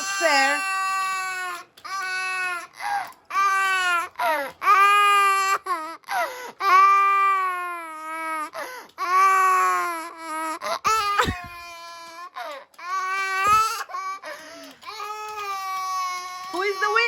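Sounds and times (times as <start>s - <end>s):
boy crying: 0.0s - 0.7s, 3.7s - 17.0s
dull bumps: 11.2s - 11.6s.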